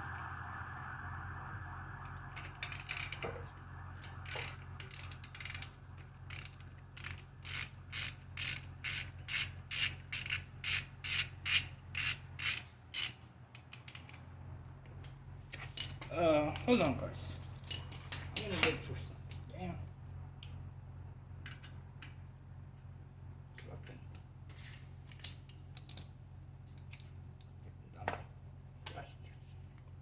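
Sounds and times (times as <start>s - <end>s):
ratchet wrench clicking: 4.2s - 5.7s, 6.3s - 14.2s.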